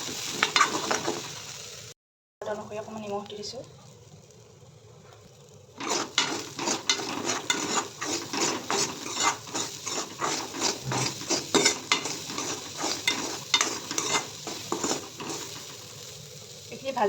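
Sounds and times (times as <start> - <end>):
spoon scraping a pan: 0.0 - 1.3, 5.8 - 16.1
food sizzling in oil: 0.0 - 17.0.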